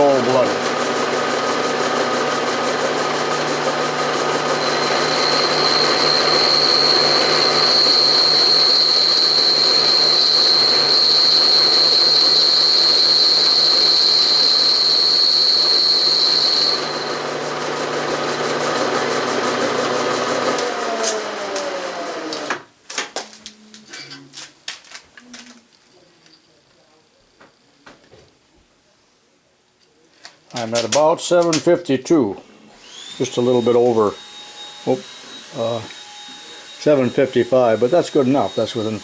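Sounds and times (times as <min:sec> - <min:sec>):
milling machine running: 0:00.0 - 0:22.6, 0:32.8 - 0:39.0
high-pitched cutting whine: 0:04.4 - 0:17.5, 0:32.8 - 0:39.0.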